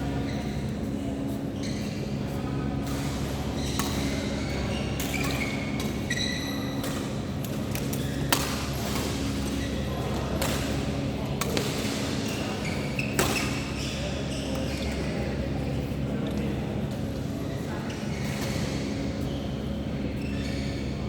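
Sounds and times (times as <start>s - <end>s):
faint voices: 9.2s - 21.0s.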